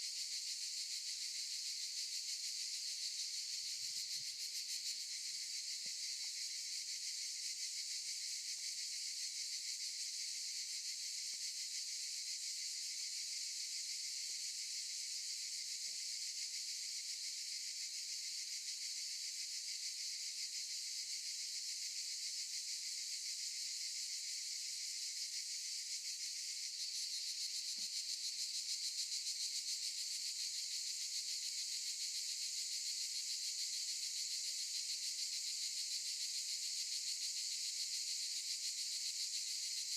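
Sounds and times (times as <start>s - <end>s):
cicadas buzzing: 26.0s - 31.8s.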